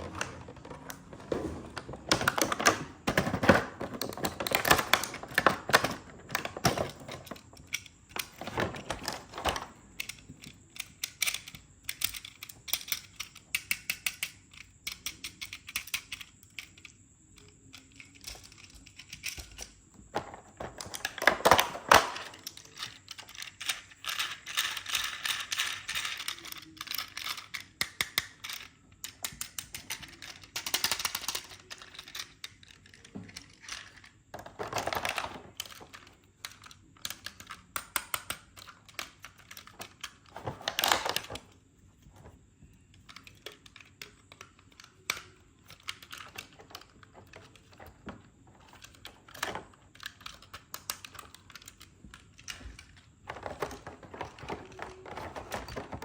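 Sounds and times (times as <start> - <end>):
plastic packaging rustling: 0.0 - 7.3, 52.6 - 56.0
small plastic clicks and taps: 34.7 - 41.6.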